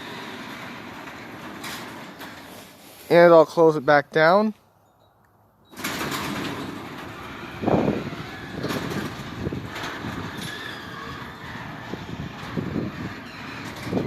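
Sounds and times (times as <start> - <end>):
garage door rumbling rattle: 0.0 - 2.7, 5.7 - 14.0.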